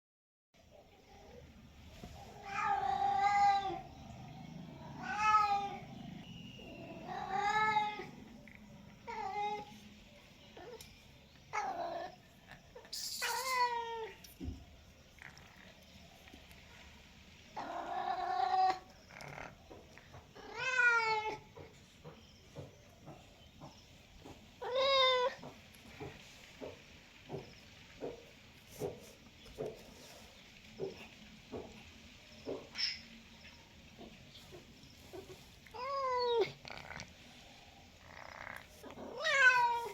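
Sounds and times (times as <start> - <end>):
cat meowing: 2.4 - 3.9, 5.0 - 5.9, 6.7 - 8.2, 12.8 - 14.2, 20.4 - 21.6, 35.2 - 37.1, 38.1 - 39.9.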